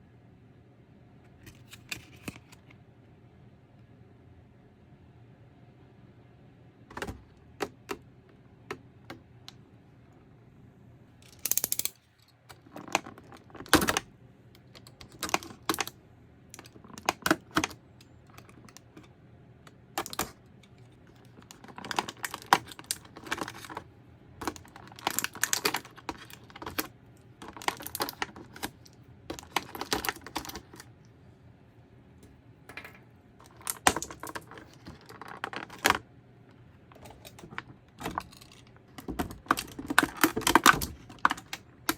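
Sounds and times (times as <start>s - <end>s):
packaging crinkling and clicking: 11.2s - 19.1s, 19.9s - 23.8s, 24.4s - 30.9s, 33.4s - 36.0s, 37.0s - 41.9s.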